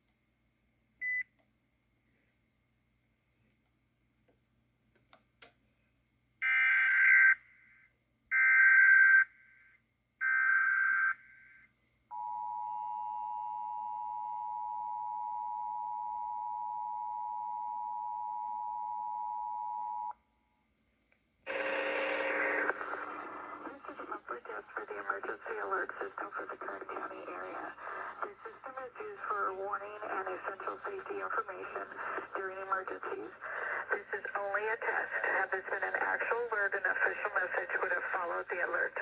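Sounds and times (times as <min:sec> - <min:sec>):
voice announcement: 0:22.5 - 0:39.0.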